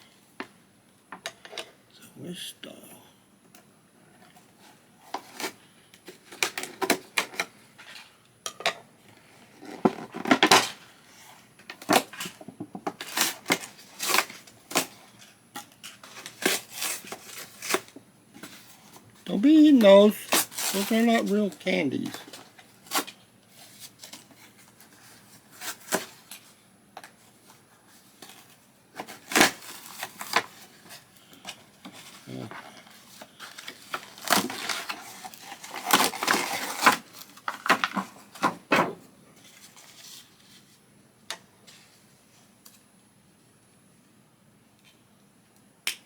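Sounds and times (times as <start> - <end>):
plastic and cardboard crinkling: 9.2 - 40.8.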